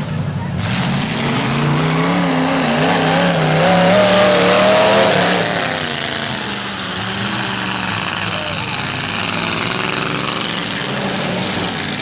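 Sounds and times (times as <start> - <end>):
car engines revving hard: 0.0 - 12.0.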